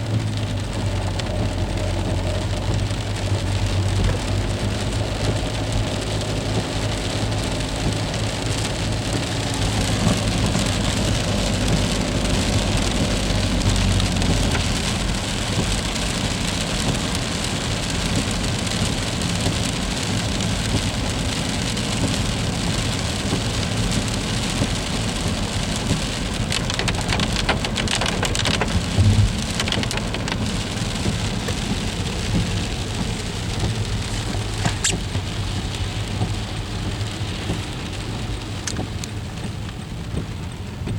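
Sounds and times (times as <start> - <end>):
freezing rain hissing: 0.0 - 40.8
ice clicking and cracking: 26.5 - 30.4
low steady hum: 29.0 - 29.5.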